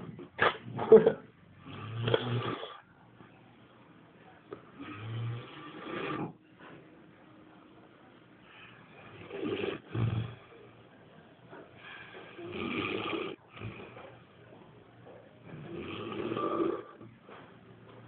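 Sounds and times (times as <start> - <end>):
person snoring loudly: 15.6 - 17.0.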